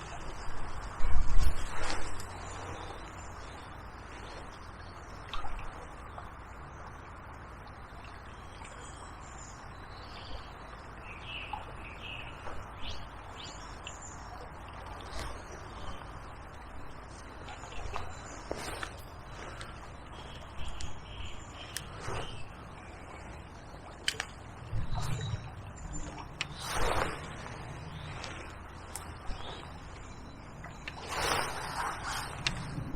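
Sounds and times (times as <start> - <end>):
steady outdoor hiss: 0.0 - 32.9
small birds chirping: 8.1 - 32.9.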